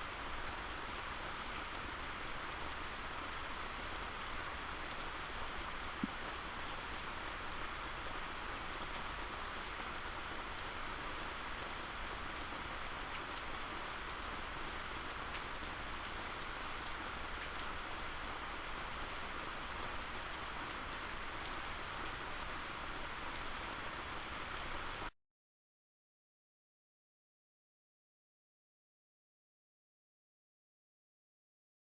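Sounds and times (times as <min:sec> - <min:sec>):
steady rain falling: 0:00.0 - 0:25.1.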